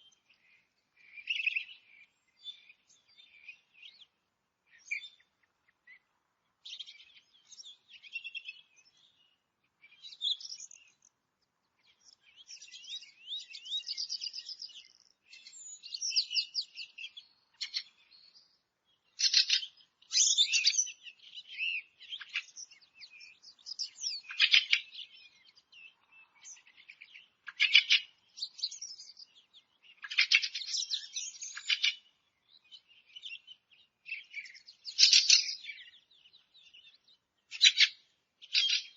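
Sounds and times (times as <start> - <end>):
forest birds singing: 0.0 - 38.9.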